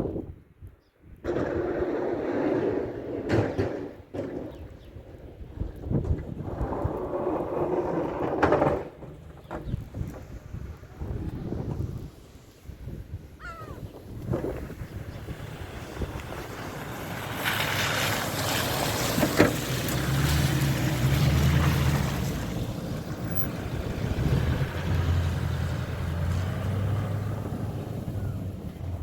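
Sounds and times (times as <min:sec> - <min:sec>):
wind noise on microphone: 0:00.0 - 0:29.0
car engine hum: 0:14.6 - 0:29.0.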